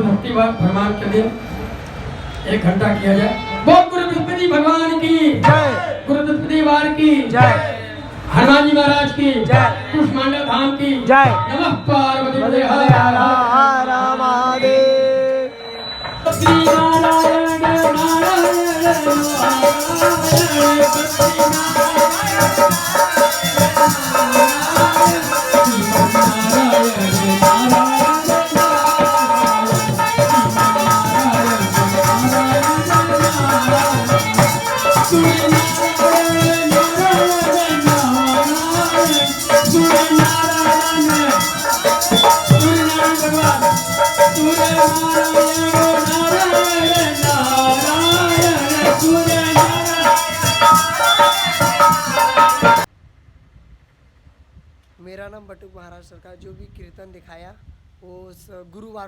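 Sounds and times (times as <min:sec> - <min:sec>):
hand percussion: 0:16.3 - 0:52.9
wavering melody: 0:16.3 - 0:52.9
shaken rattle: 0:16.6 - 0:52.9.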